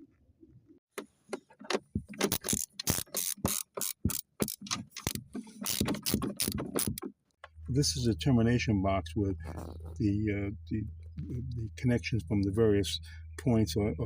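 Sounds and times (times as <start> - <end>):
mechanical clicks and rattles: 1.0 - 7.6.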